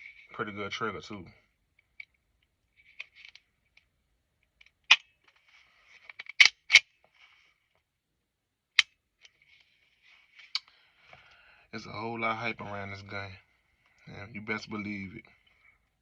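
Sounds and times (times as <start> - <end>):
pistol metallic clicks: 6.2 - 6.9.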